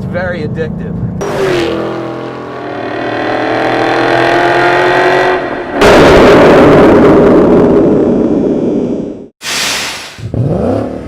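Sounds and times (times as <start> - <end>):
car engine exhaust revving: 1.2 - 9.3, 10.2 - 11.0.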